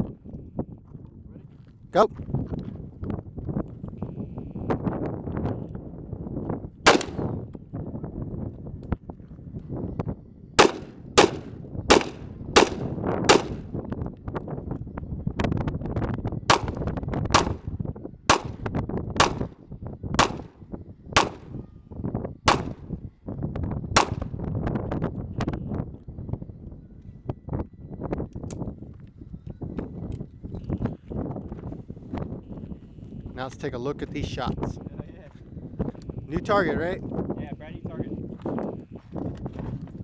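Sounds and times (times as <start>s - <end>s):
gunshots: 6.9s - 7.4s, 10.6s - 13.7s, 16.5s - 16.8s, 17.4s - 17.6s, 18.3s - 19.5s, 20.2s - 20.5s, 21.2s - 21.6s, 22.5s - 22.8s, 24.0s - 24.2s.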